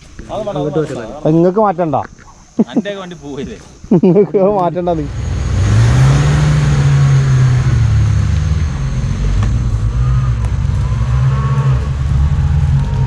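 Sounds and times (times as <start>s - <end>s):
engine droning under load: 0.0s - 13.0s.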